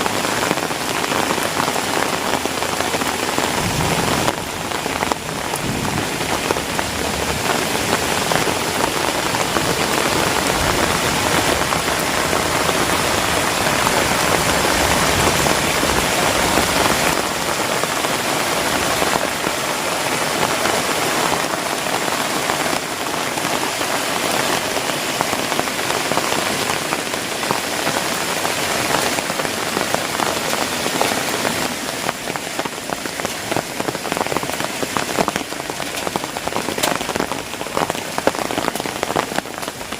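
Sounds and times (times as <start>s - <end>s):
heavy rain on foliage: 0.0s - 39.9s.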